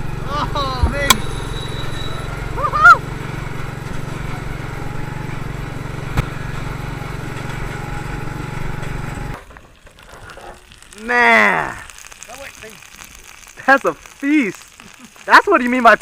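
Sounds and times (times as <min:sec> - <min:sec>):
small engine running: 0:00.0 - 0:09.5.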